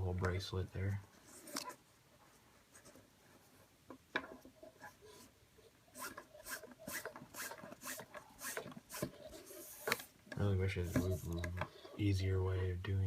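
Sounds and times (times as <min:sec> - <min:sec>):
cord rubbing and sliding: 0:01.1 - 0:03.7, 0:04.4 - 0:12.1.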